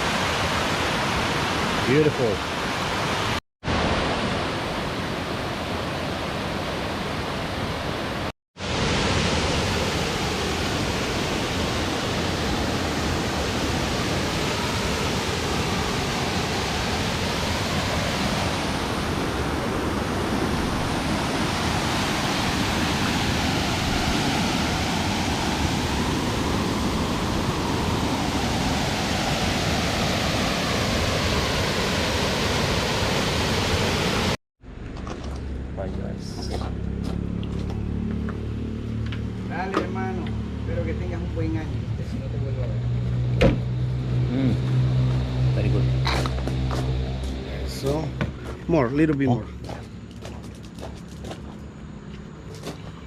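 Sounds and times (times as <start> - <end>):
waterfall roaring: 0.0 - 34.4.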